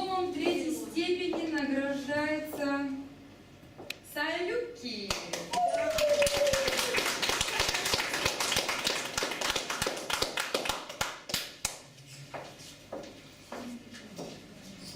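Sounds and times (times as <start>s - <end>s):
small audience applauding: 5.1s - 11.9s.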